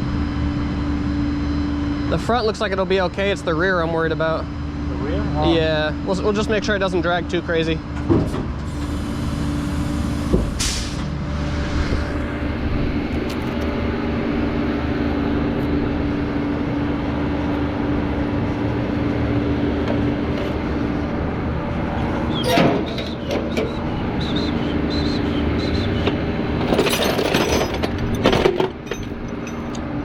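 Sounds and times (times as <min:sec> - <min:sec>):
truck engine and hydraulics humming: 0:00.0 - 0:30.0
short hiss: 0:10.6 - 0:11.0.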